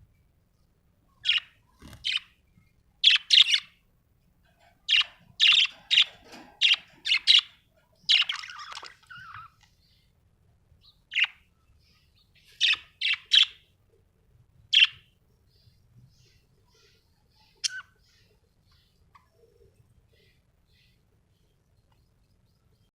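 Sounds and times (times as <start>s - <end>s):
budgie chirping: 1.2s - 2.4s, 3.0s - 3.7s, 4.9s - 9.6s.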